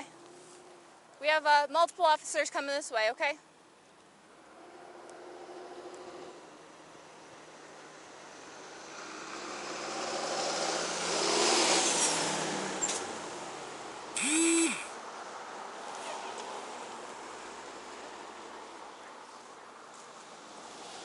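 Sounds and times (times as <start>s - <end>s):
vehicle passing by: 4.3s - 14.1s, 15.0s - 21.0s.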